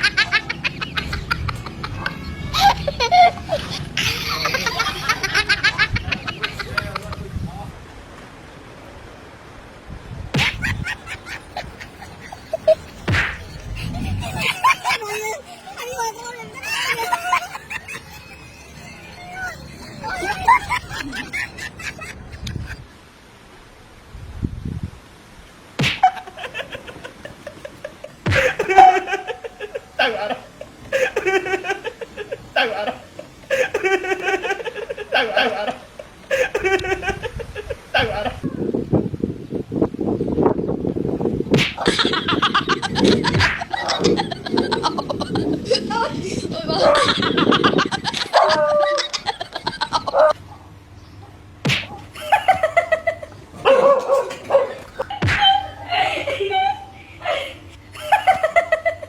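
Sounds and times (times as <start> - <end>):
person laughing: 0.0 - 7.2, 10.4 - 22.8, 25.8 - 38.6, 41.8 - 50.4, 52.2 - 59.0
sharp smack: 10.4 - 10.7, 13.1 - 13.5, 25.8 - 26.2, 28.3 - 28.6, 41.5 - 41.9, 51.6 - 52.0, 55.2 - 55.4.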